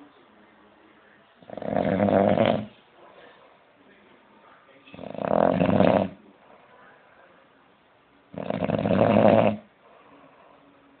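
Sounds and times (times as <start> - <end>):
man snoring: 1.5 - 2.7, 4.9 - 6.2, 8.4 - 9.6.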